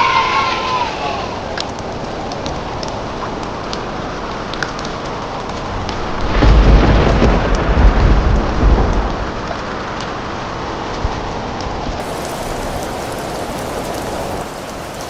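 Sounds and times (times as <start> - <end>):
steady rain falling: 0.0 - 15.0
thunder rumbling: 5.7 - 9.8, 12.0 - 15.0.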